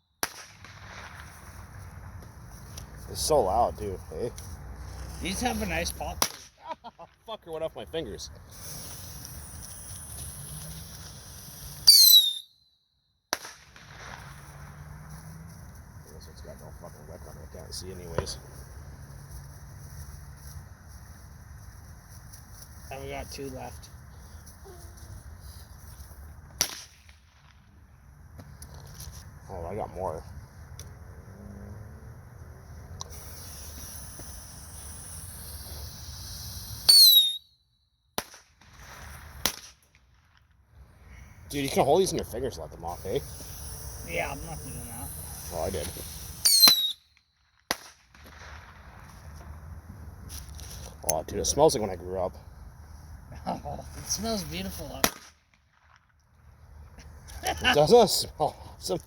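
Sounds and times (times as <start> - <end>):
firecracker bang: 0.2 - 1.8, 5.2 - 7.2, 13.3 - 15.2, 26.5 - 27.6, 38.2 - 40.2, 42.9 - 49.5, 54.8 - 56.1
sharp crack: 0.2 - 2.0, 5.2 - 7.6, 13.3 - 15.2, 26.4 - 28.6, 38.1 - 40.6, 43.1 - 49.4, 54.7 - 56.3
fuse hissing: 8.5 - 11.9, 42.9 - 46.8.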